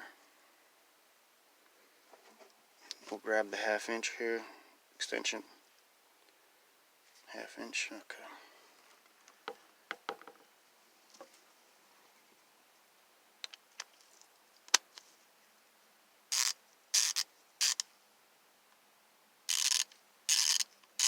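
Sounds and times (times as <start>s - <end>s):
ratchet clicking: 16.3s - 17.8s, 19.5s - 21.0s.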